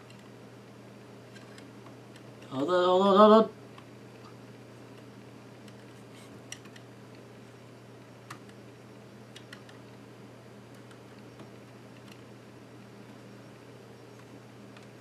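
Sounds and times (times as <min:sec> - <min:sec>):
steady low hum: 0:00.0 - 0:15.0
small clicks and taps: 0:03.7 - 0:07.2, 0:08.2 - 0:08.7, 0:09.3 - 0:09.8, 0:10.7 - 0:12.3, 0:14.1 - 0:15.0.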